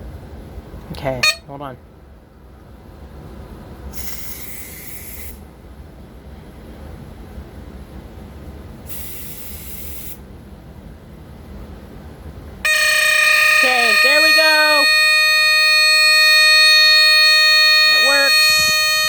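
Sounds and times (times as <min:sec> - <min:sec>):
smoke detector alarm: 0:01.2 - 0:01.4, 0:12.7 - 0:19.0.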